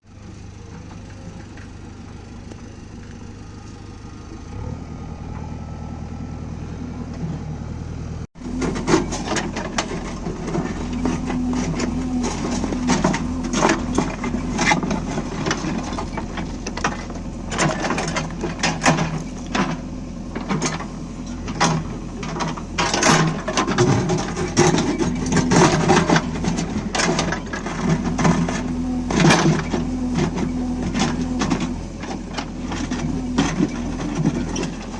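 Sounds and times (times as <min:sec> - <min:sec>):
diesel engine running: 0:00.0 - 0:34.9
bucket knocking and scraping: 0:08.4 - 0:20.8.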